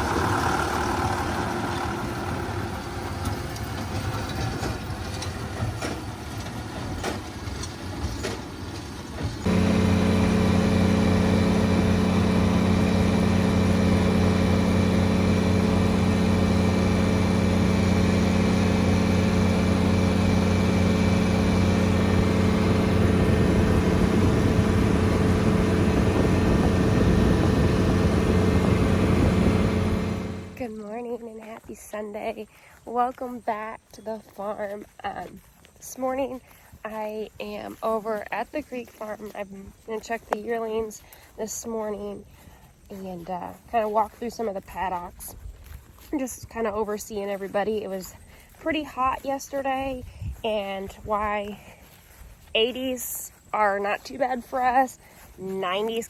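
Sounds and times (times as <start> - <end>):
low steady engine hum: 0.0 - 56.0
uneven engine sound: 0.0 - 56.0.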